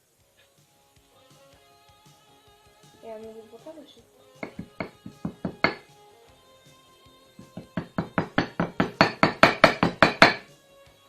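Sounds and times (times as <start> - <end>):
background music: 0.0 - 11.0
rapid tapping on a mug: 4.4 - 5.8, 7.4 - 10.4.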